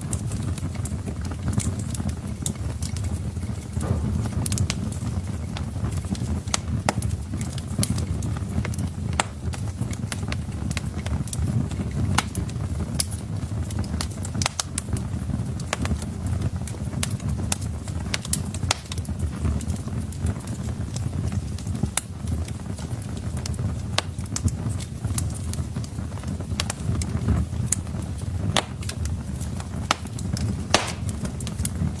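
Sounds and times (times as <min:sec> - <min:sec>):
wood fire crackling: 0:00.0 - 0:32.0
low rumble: 0:03.8 - 0:06.6.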